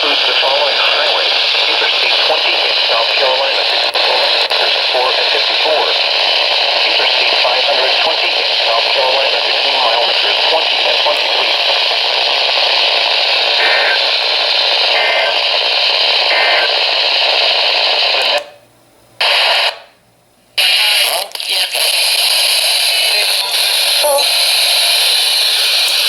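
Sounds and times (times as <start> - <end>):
radio static: 0.0 - 18.6, 19.2 - 20.0, 20.6 - 26.0
faint short data bursts: 13.5 - 14.2, 14.8 - 17.4.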